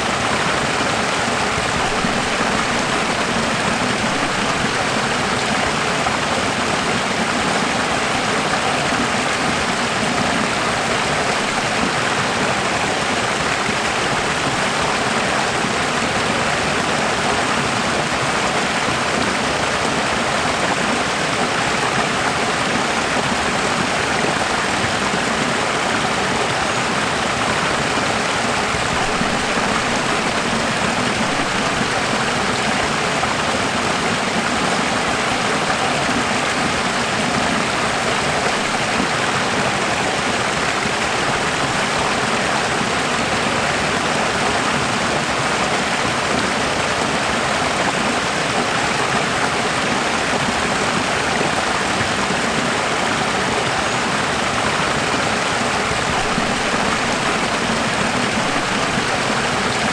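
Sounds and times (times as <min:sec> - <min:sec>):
flowing stream: 0:00.0 - 0:59.9.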